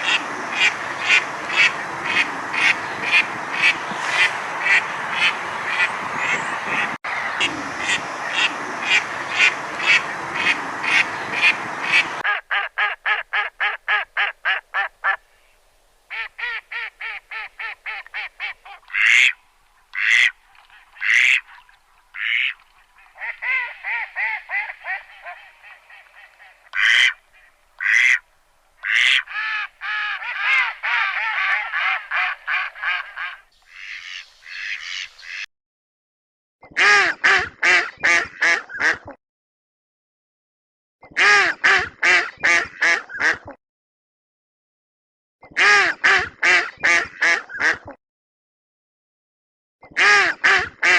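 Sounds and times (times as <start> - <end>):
ducks quacking: 0.0 - 15.2, 16.1 - 28.2, 28.8 - 35.5, 36.7 - 39.2, 41.2 - 43.6, 45.6 - 48.0, 50.0 - 50.9.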